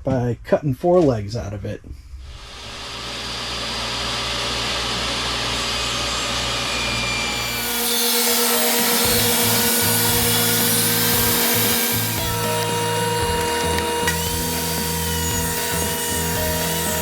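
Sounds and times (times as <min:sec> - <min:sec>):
power saw cutting wood: 0:02.2 - 0:17.0.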